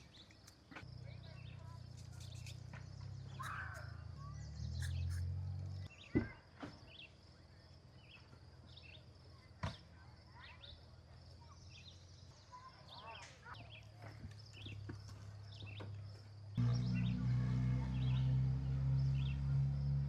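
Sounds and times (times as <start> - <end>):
short bird chirps: 1.3 - 5.4
low rumble: 16.6 - 20.0.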